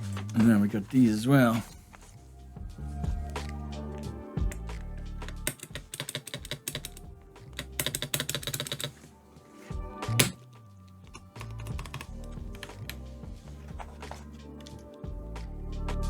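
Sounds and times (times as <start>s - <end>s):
background music: 0.0s - 16.0s
keycaps clicking onto switches: 5.2s - 9.0s, 11.1s - 13.1s.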